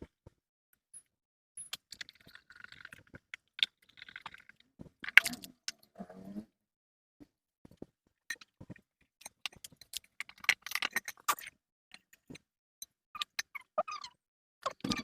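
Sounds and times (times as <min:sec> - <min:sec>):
small hard parts clicking and rattling: 0:07.7 - 0:13.6.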